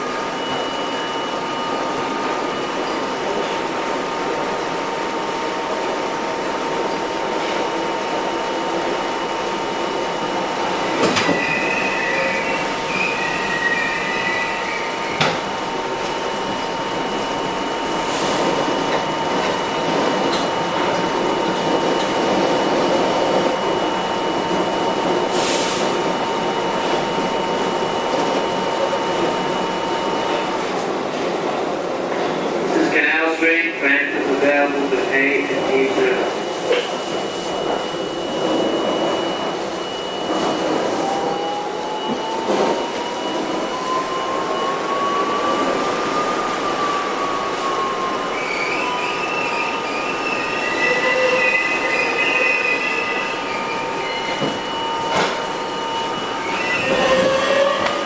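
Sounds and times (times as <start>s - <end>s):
subway car rumbling in tunnel: 0.0s - 58.0s
wheel squeal: 11.0s - 15.4s, 47.8s - 55.4s, 56.0s - 58.0s.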